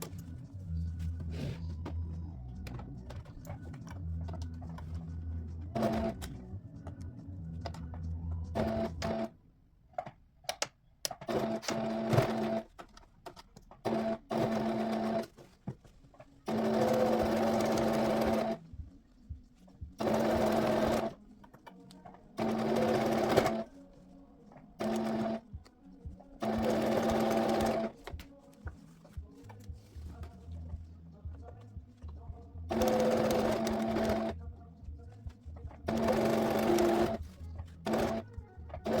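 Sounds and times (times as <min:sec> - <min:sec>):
sewing machine stitching: 0:05.7 - 0:06.2, 0:08.6 - 0:09.3, 0:11.2 - 0:12.7, 0:13.8 - 0:15.3, 0:16.5 - 0:18.6, 0:20.0 - 0:21.2, 0:22.4 - 0:23.7, 0:24.8 - 0:25.4, 0:26.4 - 0:27.9, 0:32.7 - 0:34.4, 0:35.9 - 0:37.2, 0:37.8 - 0:39.0.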